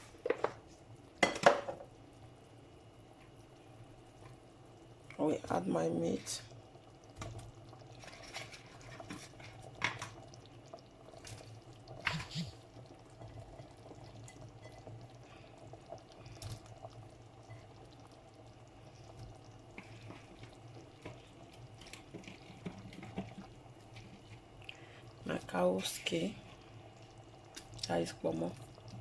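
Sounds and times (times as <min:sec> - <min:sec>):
faint steady hum: 0:00.0 - 0:29.0
liquid sloshing in a pot: 0:07.0 - 0:25.1.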